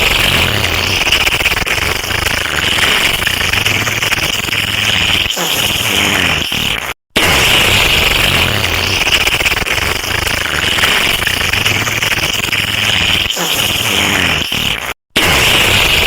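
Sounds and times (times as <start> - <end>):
harsh distorted sound effect: 0.0 - 4.5.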